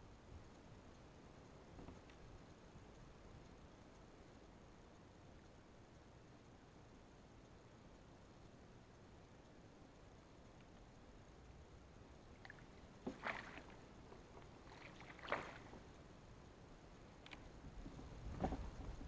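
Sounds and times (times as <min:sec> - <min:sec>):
low steady hiss: 0:00.0 - 0:19.0
water splashing and sloshing: 0:12.4 - 0:16.0.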